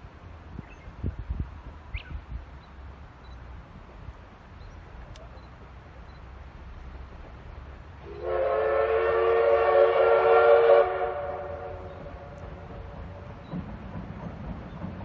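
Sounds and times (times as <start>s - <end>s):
steam locomotive whistle: 8.0s - 13.0s.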